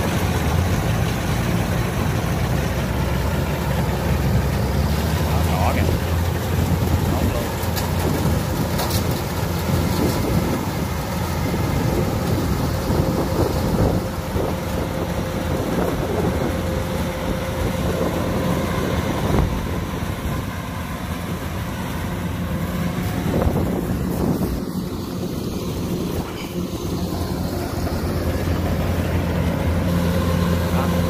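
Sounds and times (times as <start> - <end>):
combine harvester diesel rumble: 0.0 - 31.0
machinery whine: 0.0 - 31.0.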